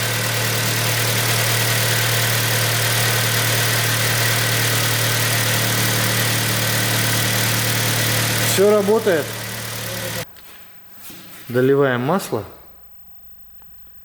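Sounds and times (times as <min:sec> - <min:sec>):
car engine idling: 0:00.0 - 0:10.3.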